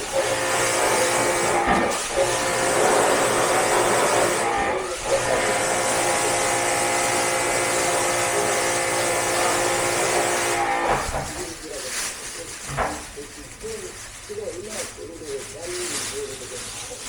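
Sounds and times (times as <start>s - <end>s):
motor running: 0.0s - 11.0s
loud hiss: 0.0s - 14.6s.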